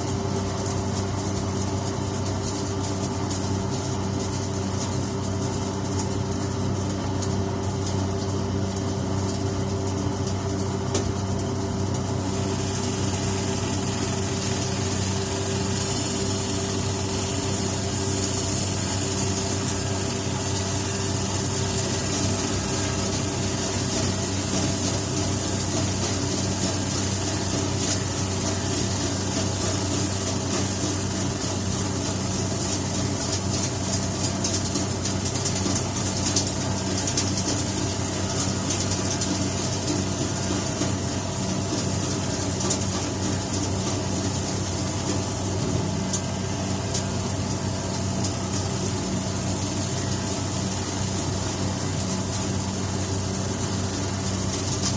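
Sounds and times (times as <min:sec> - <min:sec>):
machine motor hum: 0:05.2 - 0:32.3, 0:41.9 - 0:54.9
suction and blowing noise: 0:12.4 - 0:24.6.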